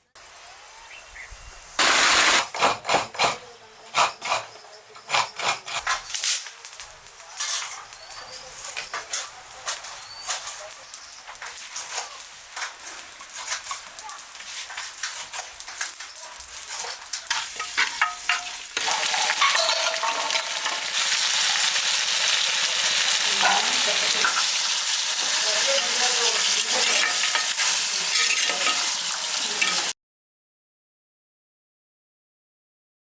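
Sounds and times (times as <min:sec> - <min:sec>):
crackling sizzling hiss: 0:06.1 - 0:30.0.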